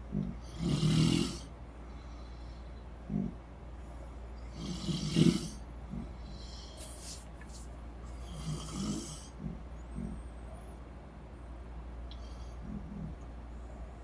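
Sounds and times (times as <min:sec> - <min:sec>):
person snoring: 0:00.5 - 0:01.5, 0:04.6 - 0:05.6, 0:08.3 - 0:09.3.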